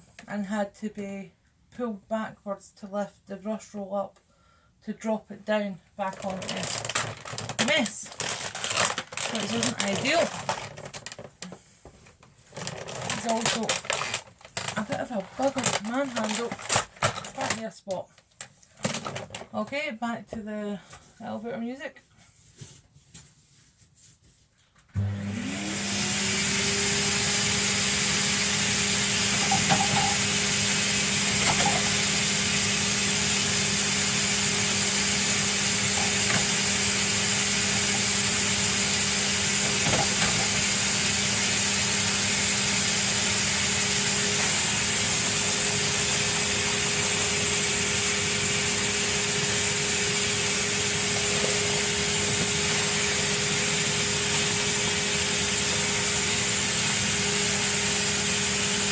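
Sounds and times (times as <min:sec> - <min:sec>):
vacuum cleaner running: 0:06.2 - 0:10.8, 0:12.6 - 0:17.6, 0:24.9 - 0:58.9.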